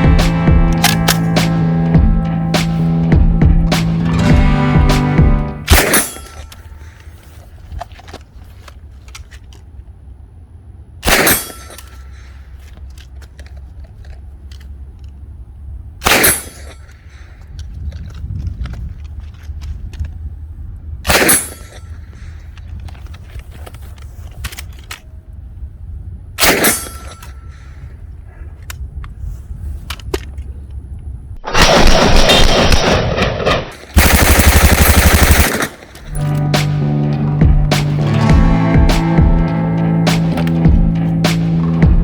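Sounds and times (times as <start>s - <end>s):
submachine gun single shots: 5.6s - 6.7s, 11.0s - 12.3s, 16.0s - 16.9s, 21.1s - 21.9s, 26.4s - 27.3s, 31.4s - 36.2s
full-auto gunfire bursts: 31.4s - 36.0s.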